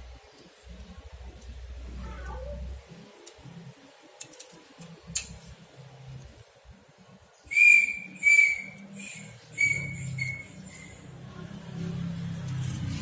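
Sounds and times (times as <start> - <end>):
short high whistled notes: 7.5 - 11.1.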